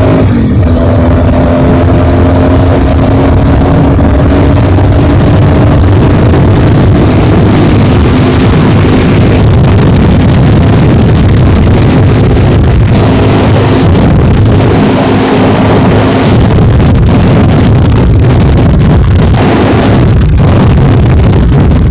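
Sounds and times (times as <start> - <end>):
motorcycle engine cruising: 0.0 - 21.9
wind buffeting microphone: 0.0 - 21.9.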